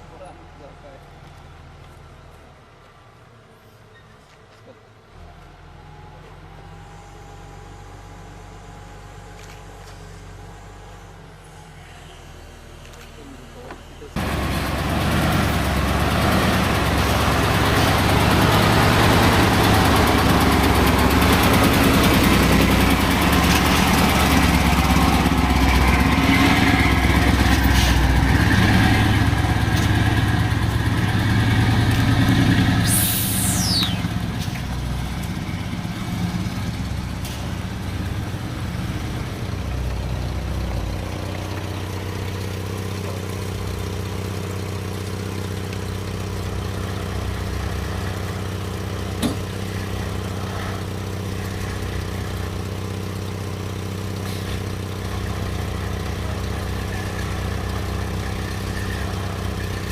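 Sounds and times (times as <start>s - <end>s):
heavy machine engine running: 5.2s - 59.9s
short high falling whine: 32.8s - 34.3s.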